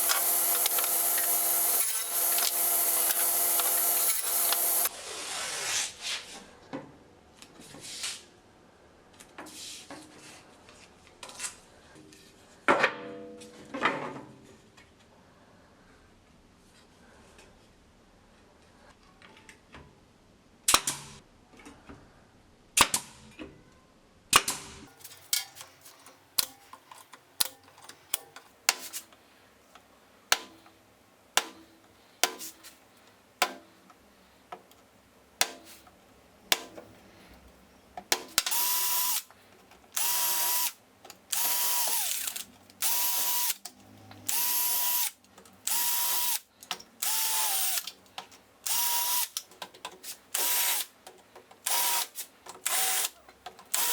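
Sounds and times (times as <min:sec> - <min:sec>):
power drill running in bursts: 0:00.0 - 0:04.9, 0:38.5 - 0:39.3, 0:40.0 - 0:43.6, 0:44.3 - 0:46.4, 0:47.0 - 0:47.9, 0:48.7 - 0:49.4, 0:50.4 - 0:50.9, 0:51.7 - 0:53.9.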